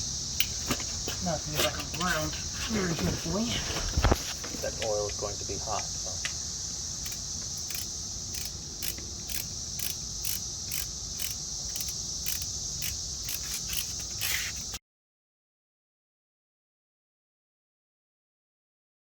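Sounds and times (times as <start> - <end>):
crickets chirring: 0.0 - 14.8.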